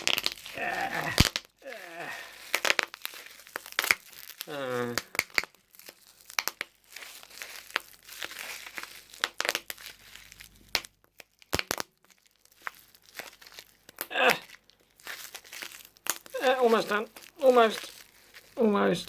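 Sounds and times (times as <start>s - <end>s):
bubble wrap crinkling and popping: 0.0s - 19.0s.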